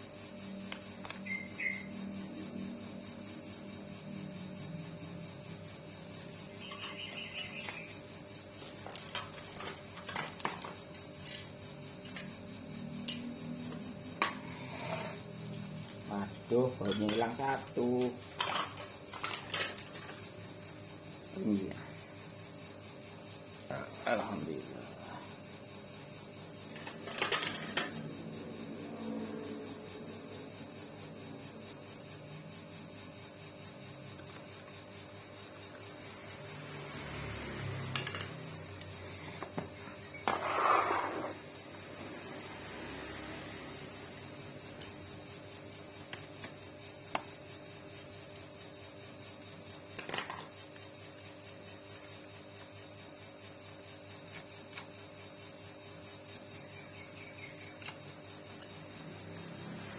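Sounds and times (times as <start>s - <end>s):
faint steady hum: 0.0s - 52.3s
metal parts clicking: 8.6s - 12.4s, 16.8s - 20.2s
metal scrape: 14.3s - 15.3s, 40.2s - 41.4s.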